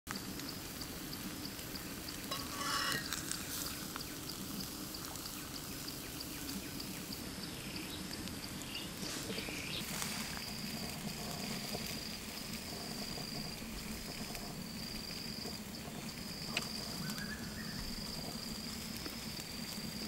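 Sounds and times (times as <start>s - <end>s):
insect trill: 0.1s - 20.0s
gliding calls: 2.2s - 7.2s.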